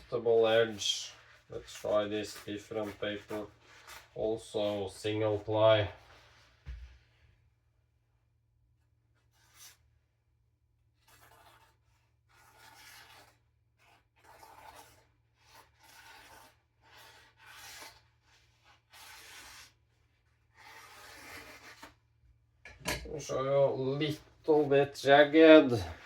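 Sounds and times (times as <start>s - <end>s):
knife slicing paper: 11.0s - 22.0s.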